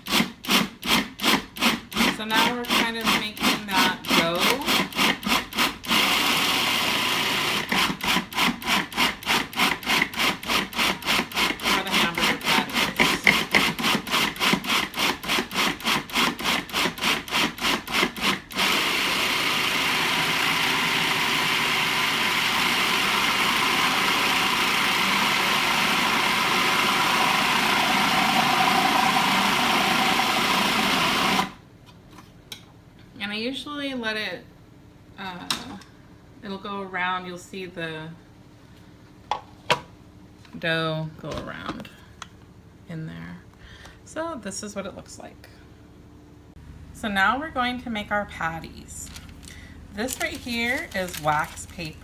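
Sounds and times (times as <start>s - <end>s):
food processor motor blending: 0.0s - 31.6s.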